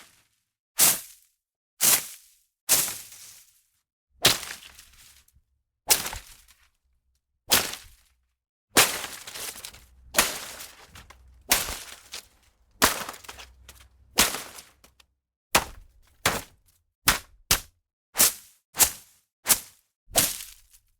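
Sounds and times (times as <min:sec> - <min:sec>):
foliage being whipped: 0:05.9 - 0:06.4, 0:07.5 - 0:08.0, 0:08.8 - 0:15.0, 0:15.6 - 0:16.5, 0:17.1 - 0:18.9, 0:20.2 - 0:20.6.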